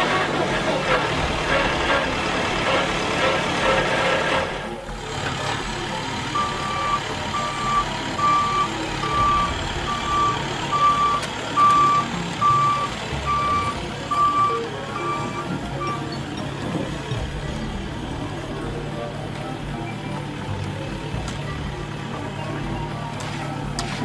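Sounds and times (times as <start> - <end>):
vehicle engine running: 0.0 - 24.0
reversing alarm beeping: 5.4 - 20.2.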